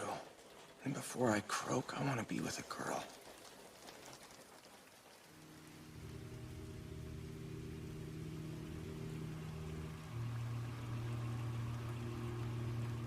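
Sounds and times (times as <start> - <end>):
soft rain falling: 0.0 - 13.0
low droning hum: 5.4 - 13.0.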